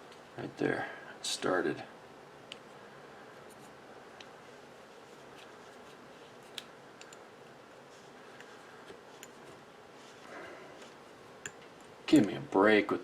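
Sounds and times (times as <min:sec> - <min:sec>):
steady low hiss: 0:00.0 - 0:13.0.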